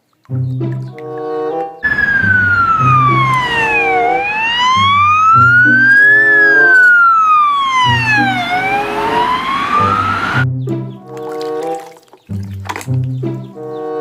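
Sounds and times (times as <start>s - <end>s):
background music: 0.2s - 7.0s, 7.6s - 14.0s
siren wailing in slow sweeps: 1.8s - 10.4s.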